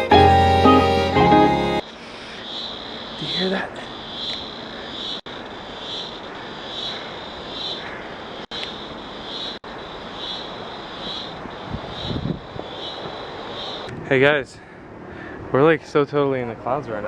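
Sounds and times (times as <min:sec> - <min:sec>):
high insect chirp: 0:01.8 - 0:13.9.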